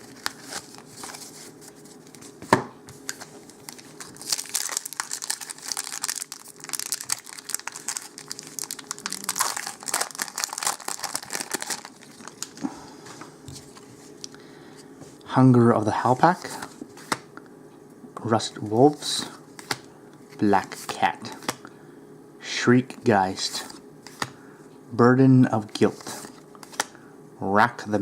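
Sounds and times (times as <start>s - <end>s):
foil wrapper tearing and crinkling: 3.2s - 12.6s
sharp crack of wrapper: 4.1s - 12.6s.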